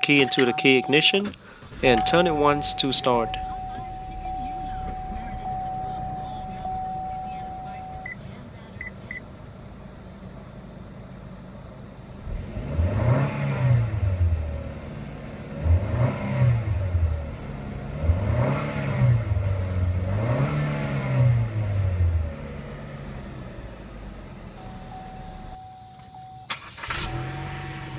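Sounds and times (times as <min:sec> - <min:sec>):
car engine idling and revving: 0:00.0 - 0:27.9.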